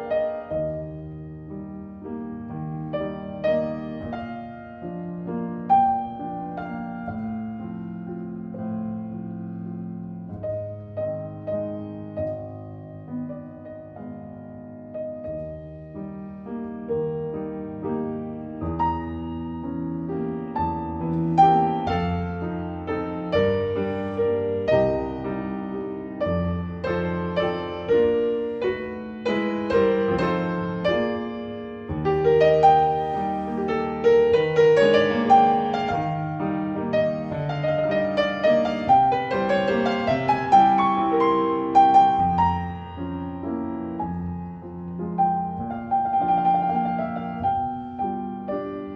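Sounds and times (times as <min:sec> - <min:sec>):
gentle piano piece: 0:00.0 - 0:48.9.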